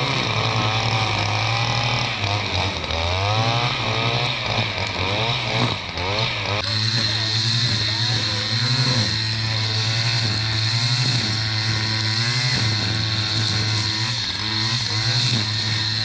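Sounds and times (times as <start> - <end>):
brushcutter engine running: 0.0 - 16.0.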